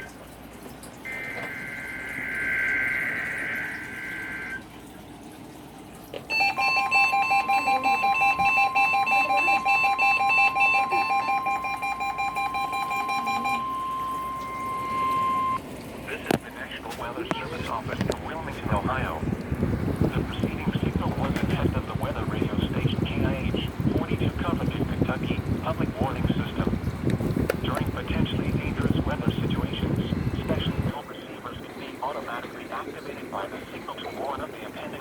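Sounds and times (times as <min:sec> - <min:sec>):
pulsing buzzy alarm beeping: 0:01.0 - 0:04.9, 0:06.3 - 0:15.7
steady warning alarm tone: 0:01.0 - 0:04.9, 0:06.3 - 0:15.6
digital header burst: 0:01.1 - 0:04.6
warbling two-tone screech: 0:01.1 - 0:04.6.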